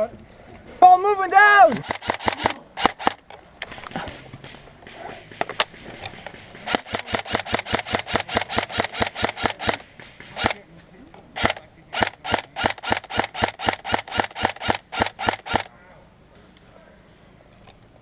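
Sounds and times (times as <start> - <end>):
airsoft guns firing: 1.7 - 10.6, 11.4 - 15.7.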